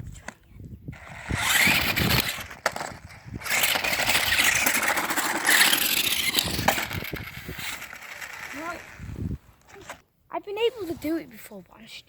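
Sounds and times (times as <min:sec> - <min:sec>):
toy truck motors whirring: 0:00.9 - 0:09.2
tyres scrubbing on tarmac: 0:01.0 - 0:09.0.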